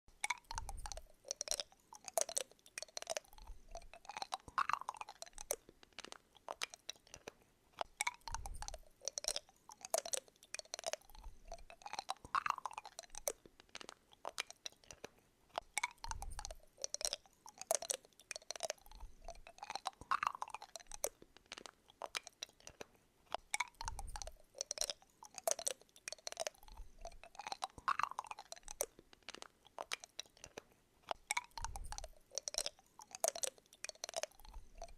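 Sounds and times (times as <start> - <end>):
dense crunching clicks: 4.1 - 7.9, 12.9 - 15.6, 28.6 - 30.7.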